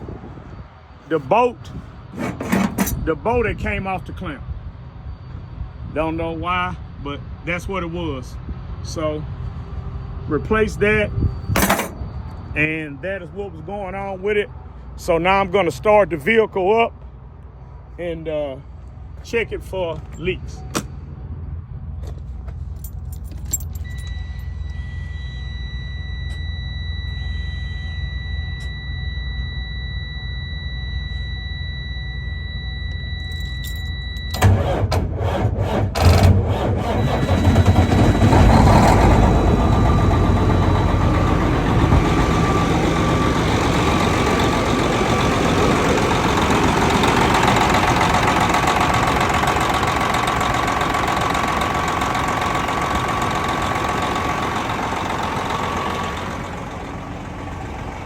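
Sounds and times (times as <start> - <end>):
diesel engine cranking and idling: 0.0 - 58.0
steady high tone: 23.8 - 34.5, 36.8 - 58.0
thin whine: 23.8 - 34.6.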